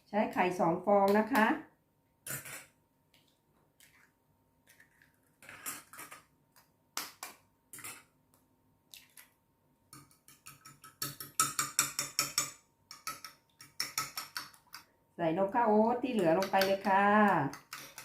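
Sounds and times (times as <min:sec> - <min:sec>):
bowl and utensils clinking: 0:10.0 - 0:14.8.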